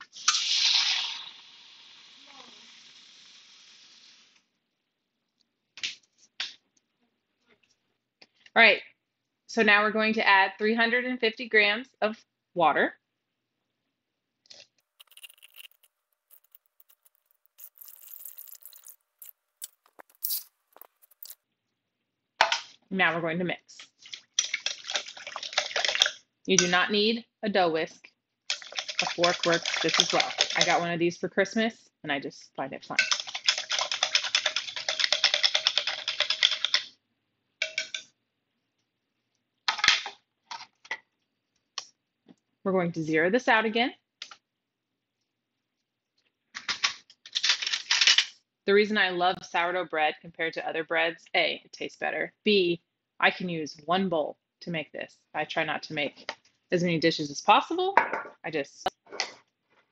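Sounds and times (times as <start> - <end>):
water pouring into bowl: 15.0 - 21.4, 24.0 - 26.1, 28.5 - 30.8
kitchen clicks and taps: 33.0 - 36.9, 37.6 - 38.1.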